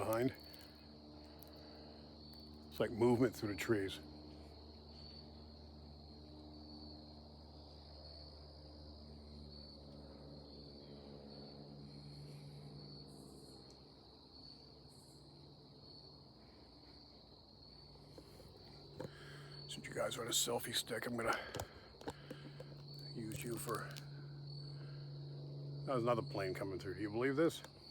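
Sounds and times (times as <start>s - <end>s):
distant small plane drone: 0.0s - 27.9s
insects chirping: 0.0s - 27.9s.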